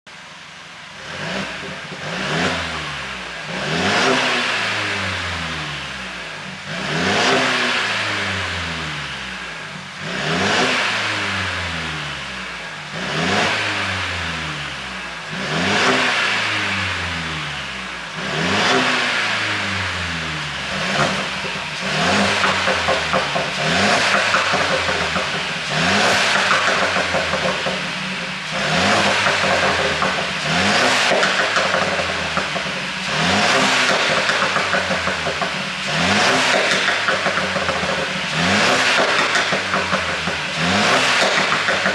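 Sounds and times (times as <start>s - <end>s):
car engine revving: 0.8s - 41.9s
exhaust crackling and popping: 1.0s - 5.5s, 17.9s - 41.9s.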